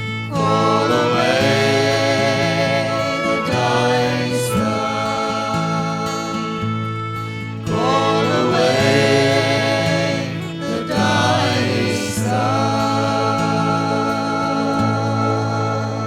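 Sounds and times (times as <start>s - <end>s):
folk band held chords: 0.0s - 16.0s
voices singing together: 0.0s - 16.0s.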